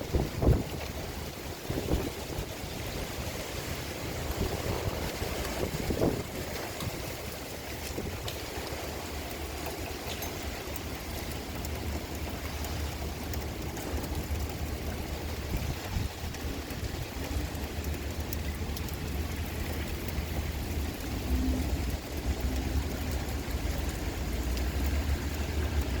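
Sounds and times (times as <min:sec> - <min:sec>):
wind buffeting microphone: 0:00.0 - 0:09.3, 0:12.9 - 0:26.0
heavy rain pelting down: 0:00.0 - 0:26.0.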